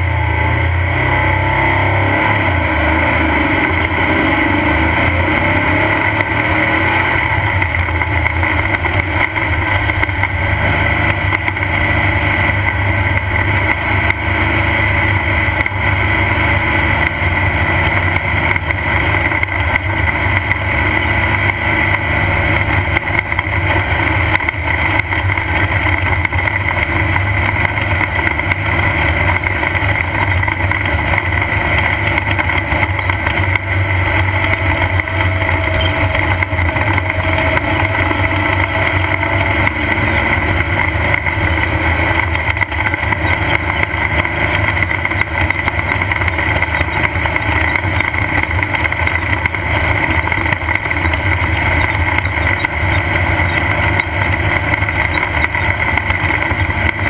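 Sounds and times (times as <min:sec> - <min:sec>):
race car engine running: 0:00.0 - 0:57.0.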